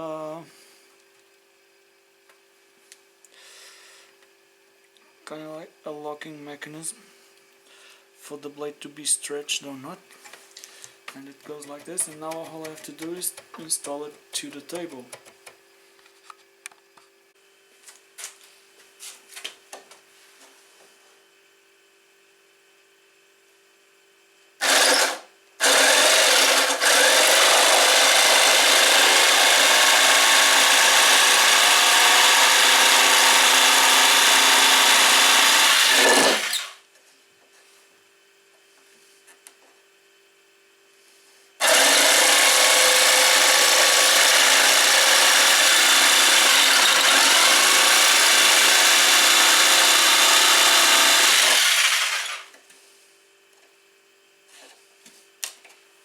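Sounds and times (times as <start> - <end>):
power tool cutting wood: 24.6 - 36.8, 41.6 - 52.6.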